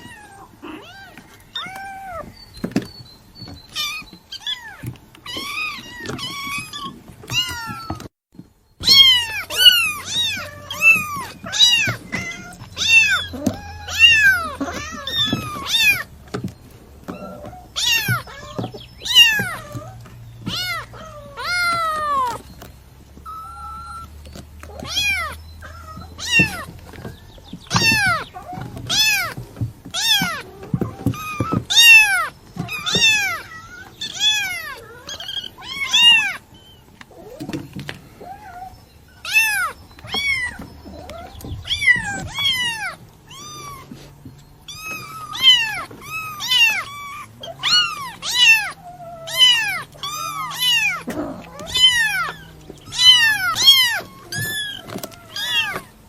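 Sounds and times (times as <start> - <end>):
kitten meowing: 8.8 - 16.1, 17.1 - 22.5, 24.7 - 27.0, 27.7 - 36.4, 39.2 - 44.0, 44.7 - 55.9.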